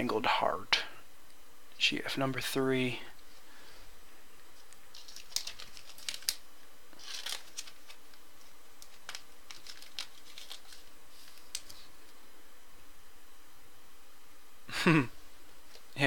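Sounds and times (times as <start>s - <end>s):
packaging crinkling and rustling: 4.5s - 11.9s.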